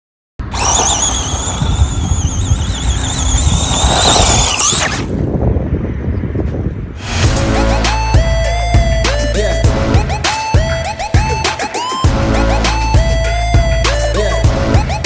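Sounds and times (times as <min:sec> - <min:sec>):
high wavering squeal: 0:00.4 - 0:05.1.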